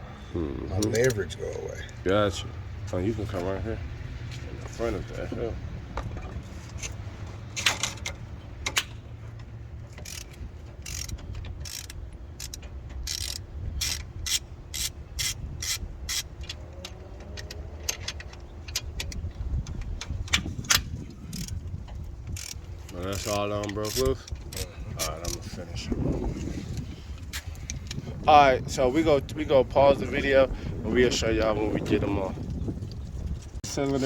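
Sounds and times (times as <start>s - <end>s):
ratchet wrench clicking: 9.9s - 21.6s, 22.3s - 25.5s.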